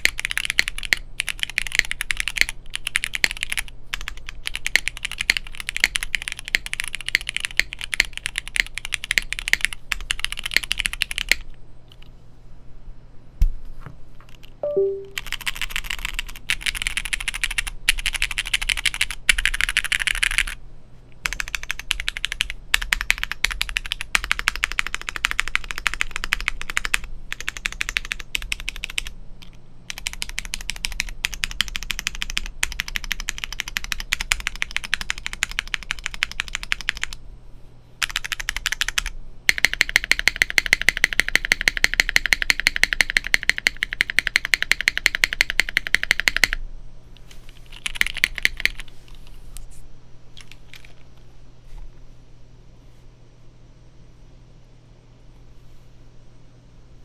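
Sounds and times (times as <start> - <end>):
keyboard typing: 0.0 - 12.1, 14.3 - 20.6, 21.2 - 37.2, 38.0 - 46.6, 47.5 - 49.3, 50.4 - 51.0.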